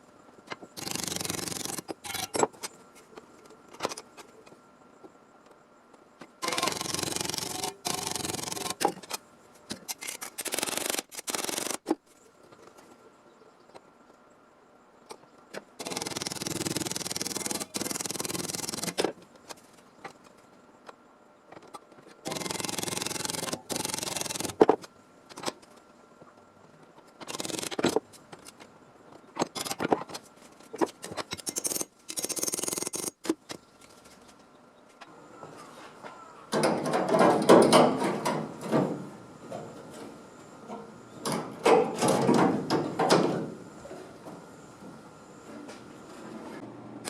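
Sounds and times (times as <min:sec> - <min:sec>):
metalworking noise bursts: 0:06.4 - 0:08.9.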